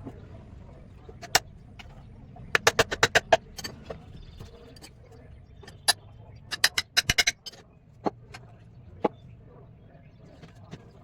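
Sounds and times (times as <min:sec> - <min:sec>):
sharp clicks and knocks: 0:02.6 - 0:04.9, 0:05.7 - 0:08.5.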